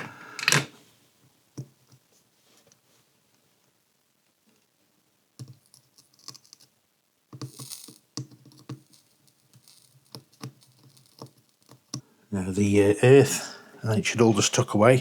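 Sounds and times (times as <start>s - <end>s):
tools clicking and tapping: 0.0s - 0.7s.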